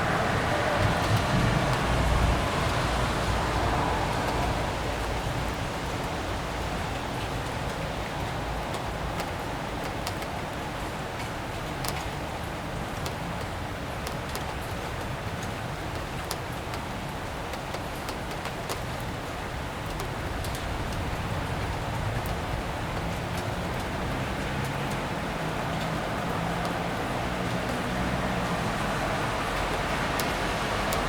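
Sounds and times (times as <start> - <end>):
vehicle engine hum: 0.0 - 6.8
low traffic rumble: 0.0 - 14.0, 18.9 - 31.0
rain falling on street: 0.0 - 31.0
droplet ticks: 29.6 - 31.0.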